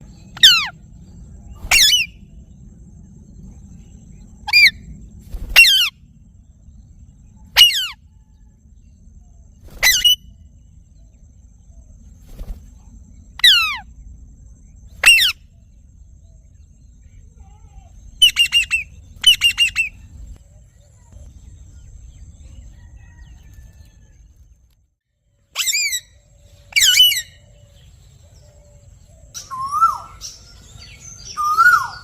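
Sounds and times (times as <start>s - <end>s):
faint low hum: 0.0s - 32.0s
parakeet squawking: 7.6s - 8.0s, 15.0s - 15.4s.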